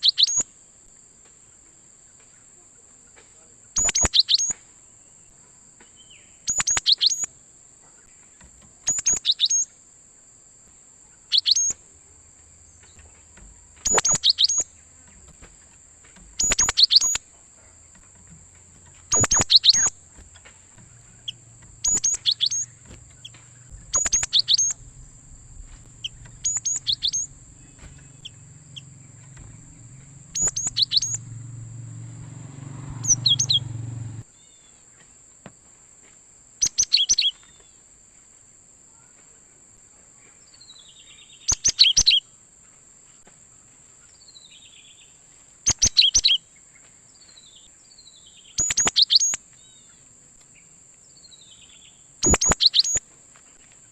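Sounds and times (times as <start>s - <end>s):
bird singing sharp phrases: 0.0s - 0.5s, 3.8s - 7.3s, 8.0s - 9.7s, 11.1s - 11.8s, 12.6s - 34.8s, 36.6s - 37.8s, 40.4s - 42.2s, 44.2s - 46.4s, 47.1s - 50.0s, 51.2s - 53.0s
low hum: 17.2s - 34.2s.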